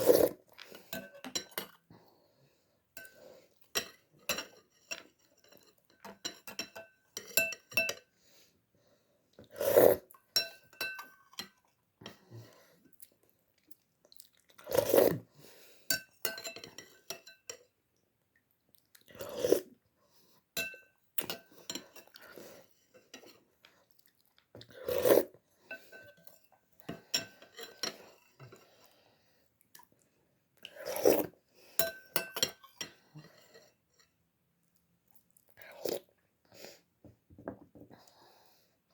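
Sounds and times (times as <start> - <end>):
utensil clinking against dish: 3.8 - 8.0, 10.4 - 11.6
chewing: 12.9 - 15.1.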